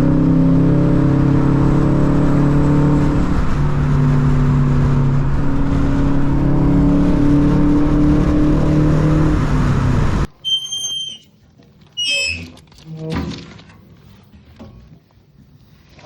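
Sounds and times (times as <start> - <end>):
car engine running: 0.0 - 10.3.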